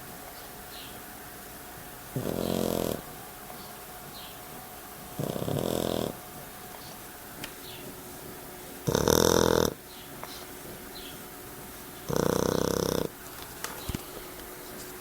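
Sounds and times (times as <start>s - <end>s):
puppy snoring: 2.1s - 3.2s, 5.1s - 6.2s, 8.8s - 10.8s, 12.0s - 13.2s.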